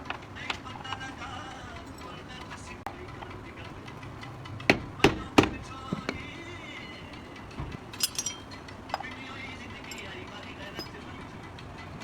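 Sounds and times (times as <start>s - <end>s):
tools clinking on metal: 0.0s - 11.3s
faint background music: 0.0s - 12.0s
sharp ringing knocks: 4.4s - 6.4s.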